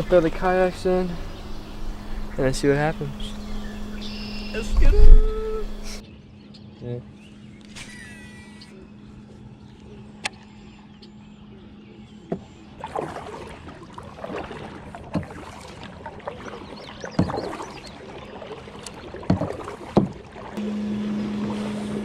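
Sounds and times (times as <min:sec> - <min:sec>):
steady low hum: 0:00.0 - 0:07.7, 0:20.5 - 0:22.0
paddle strokes splashing: 0:12.3 - 0:22.0
water swishing: 0:12.4 - 0:22.0.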